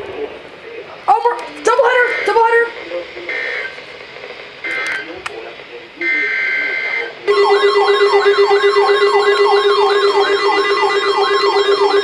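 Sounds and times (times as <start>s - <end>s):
electronic siren yelping: 1.8s - 2.7s, 6.0s - 12.0s.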